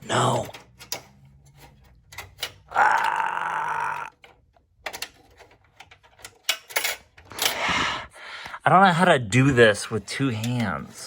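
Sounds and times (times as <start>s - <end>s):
computer hardware clicks and knocks: 4.2s - 7.4s.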